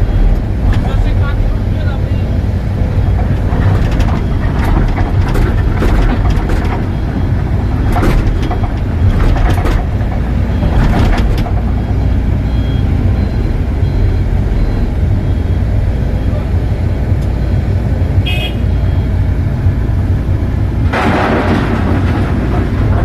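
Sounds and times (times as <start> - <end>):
excavator engine rumbling: 0.0 - 23.0
clanks and knocks: 2.8 - 12.7, 20.9 - 23.0.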